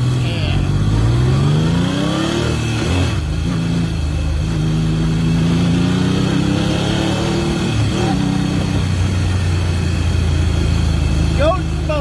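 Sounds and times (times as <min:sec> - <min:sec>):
motorcycle engine revving: 0:00.0 - 0:12.0.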